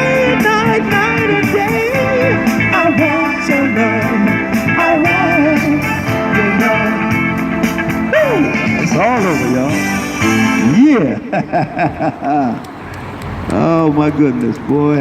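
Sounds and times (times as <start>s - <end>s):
blues-rock guitar music: 0.0s - 11.4s.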